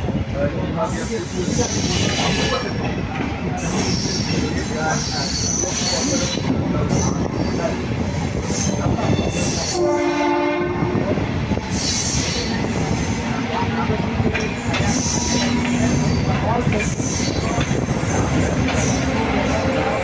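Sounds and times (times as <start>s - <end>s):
train rumbling on rails: 0.0s - 20.0s
train horn: 9.4s - 11.1s.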